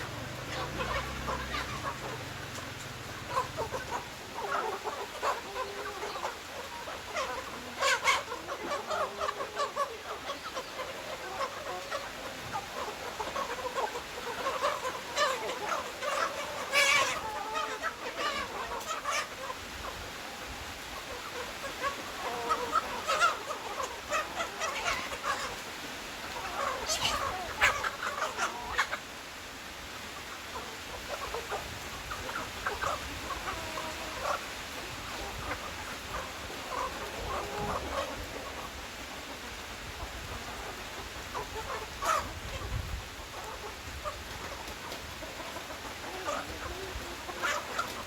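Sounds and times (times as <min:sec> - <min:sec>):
chicken squawks: 0:00.0 - 0:29.2, 0:30.1 - 0:48.0
chickens clucking: 0:00.0 - 0:48.0.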